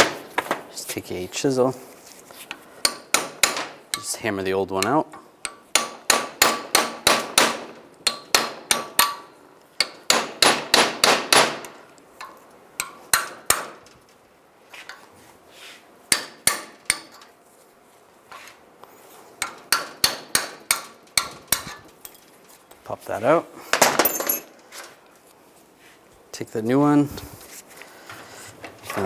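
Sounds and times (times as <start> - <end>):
hammer striking chisel: 2.8 - 11.8, 12.8 - 13.8, 16.1 - 17.2, 19.4 - 21.8.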